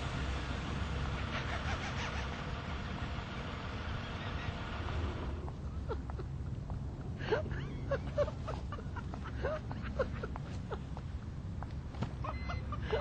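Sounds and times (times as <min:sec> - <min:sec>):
car engine idling: 0:00.0 - 0:06.5.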